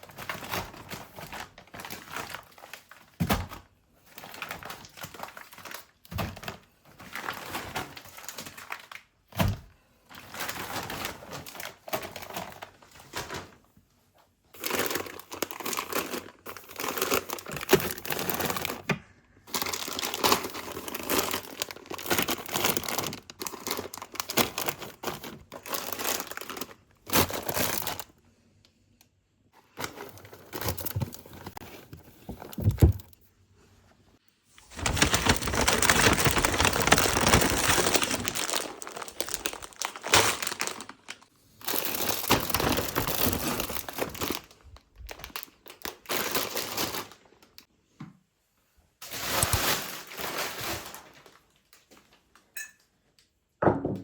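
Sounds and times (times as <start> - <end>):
plastic bags crinkling: 0.0 - 9.1, 10.1 - 13.6, 14.5 - 28.2, 29.7 - 33.2, 34.5 - 47.6, 49.0 - 52.2
items thudding down: 29.8 - 33.2, 34.6 - 41.2.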